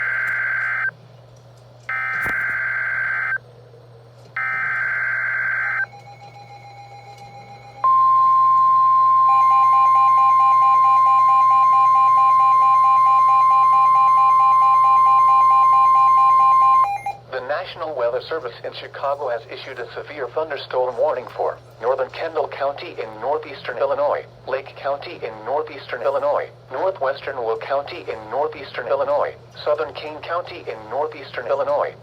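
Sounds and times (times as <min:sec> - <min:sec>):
steady warning alarm tone: 0:00.0 - 0:00.9, 0:01.9 - 0:03.4, 0:04.4 - 0:17.4.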